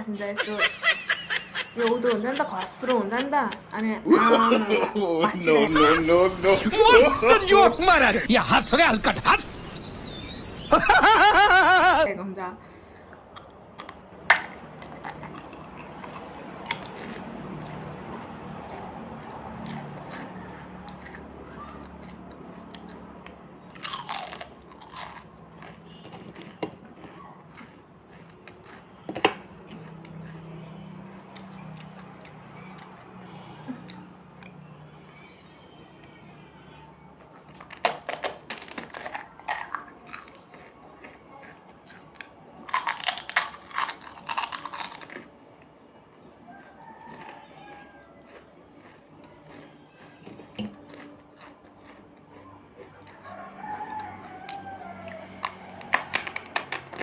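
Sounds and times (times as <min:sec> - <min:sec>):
crisp shells crunching: 0:23.8 - 0:28.8, 0:37.4 - 0:41.2, 0:41.9 - 0:45.3.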